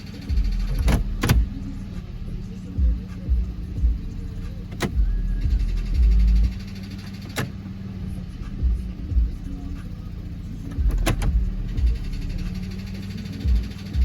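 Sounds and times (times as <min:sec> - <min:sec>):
sharp clicks: 0:00.0 - 0:02.3, 0:04.3 - 0:07.8, 0:09.7 - 0:14.0
car engine running: 0:00.0 - 0:14.0
music with heavy bass beat: 0:00.0 - 0:14.0.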